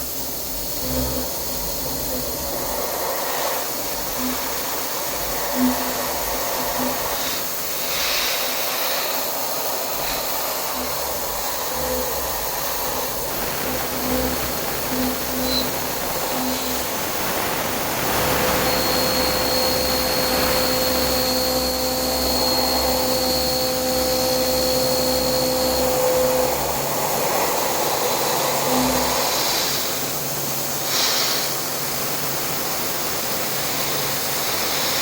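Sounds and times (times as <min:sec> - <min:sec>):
hissing machining noise: 0:00.0 - 0:35.0
short intermittent machine tones: 0:10.0 - 0:27.5.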